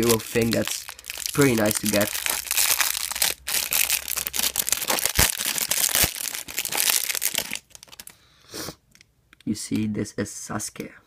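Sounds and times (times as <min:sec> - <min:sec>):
packaging crinkling and tearing: 0:00.0 - 0:08.2.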